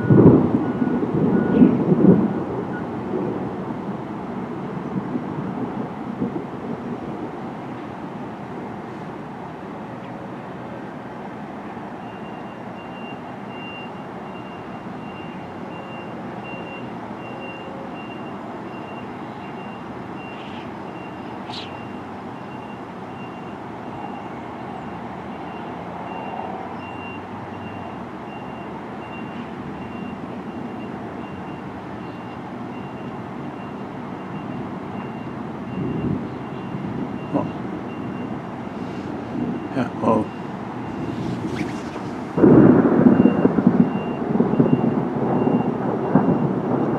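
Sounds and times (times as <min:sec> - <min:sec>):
reversing alarm beeping: 0:00.0 - 0:01.7, 0:12.0 - 0:46.9
steady rushing background: 0:40.3 - 0:43.6.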